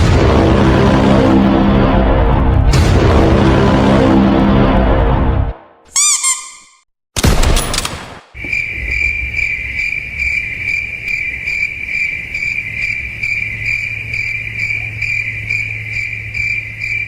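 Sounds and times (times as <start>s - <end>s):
crickets chirping: 8.4s - 17.0s.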